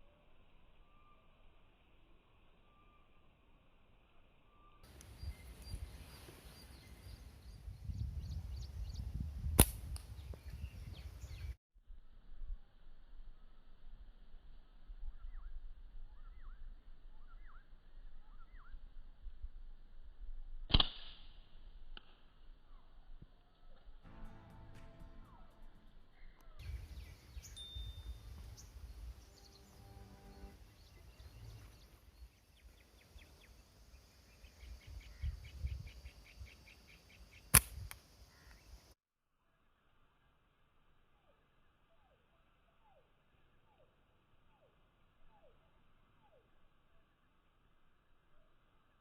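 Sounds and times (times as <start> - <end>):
faint bird chirps: 0.0 - 9.3, 14.7 - 19.2, 25.2 - 49.0
slingshot shot crack: 9.5 - 10.2, 20.7 - 21.4, 37.5 - 38.0
small click: 37.5 - 38.6.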